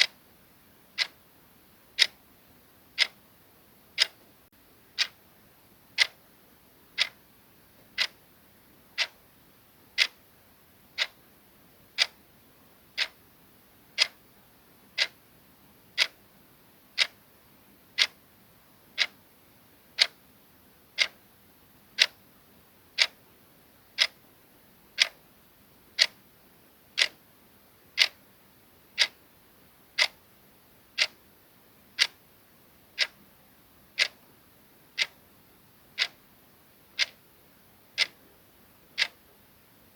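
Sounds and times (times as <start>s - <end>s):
clock ticking: 1.0s - 1.2s, 2.0s - 2.2s, 3.0s - 3.2s, 4.0s - 4.2s, 5.0s - 5.2s, 6.0s - 6.2s, 7.0s - 7.2s, 7.8s - 8.2s, 9.0s - 9.2s, 10.0s - 10.2s, 11.0s - 11.2s, 12.0s - 12.2s, 13.0s - 13.2s, 14.0s - 14.2s, 15.0s - 15.2s, 16.0s - 16.2s, 17.0s - 17.2s, 18.0s - 18.2s, 19.0s - 19.2s, 20.0s - 20.2s, 21.0s - 21.2s, 22.0s - 22.2s, 23.0s - 23.2s, 23.9s - 24.2s, 25.0s - 25.2s, 26.0s - 26.2s, 27.0s - 27.2s, 28.0s - 28.2s, 29.0s - 29.2s, 30.0s - 30.2s, 31.0s - 31.2s, 32.0s - 32.2s, 33.0s - 33.2s, 34.0s - 34.3s, 35.0s - 35.2s, 36.0s - 36.2s, 37.0s - 37.2s, 38.0s - 38.2s, 39.0s - 39.3s.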